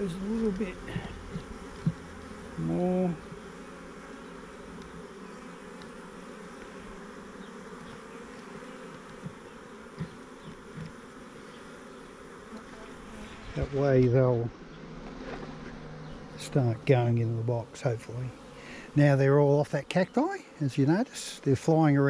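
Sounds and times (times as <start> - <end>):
bees buzzing: 0.0 - 22.0
man humming: 2.6 - 3.3.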